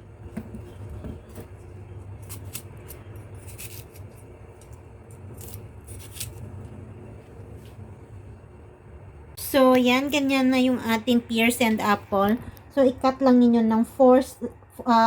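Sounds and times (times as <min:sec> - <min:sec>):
low steady hum: 0:00.0 - 0:15.0
knife cutting and scraping pears: 0:00.4 - 0:06.7.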